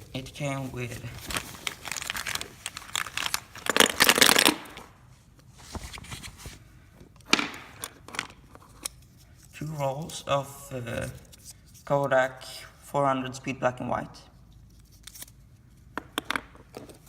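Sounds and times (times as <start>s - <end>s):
bag rustling and crinkling: 0.5s - 4.9s.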